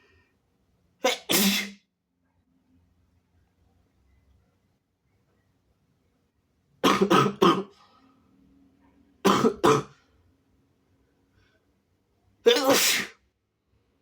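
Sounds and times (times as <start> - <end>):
person coughing: 1.1 - 1.8, 6.8 - 7.7, 9.3 - 10.0, 12.5 - 13.2.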